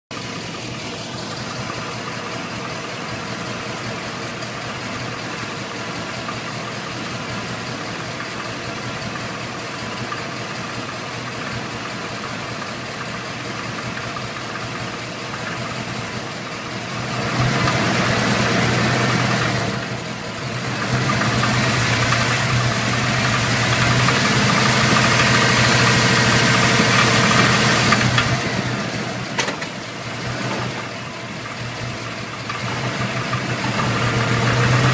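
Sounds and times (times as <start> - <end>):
car engine knocking: 0.1 - 34.9
engine revving: 16.9 - 34.9.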